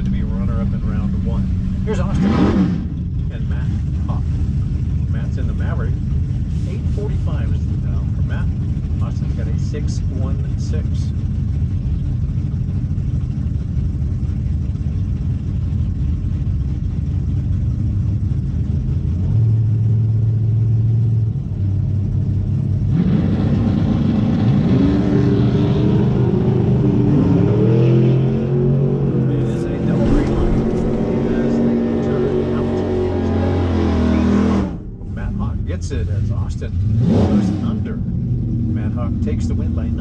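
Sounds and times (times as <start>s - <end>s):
racing car engines accelerating: 0.0s - 11.3s, 22.0s - 40.0s
low wind rumble: 0.0s - 22.9s, 25.9s - 40.0s.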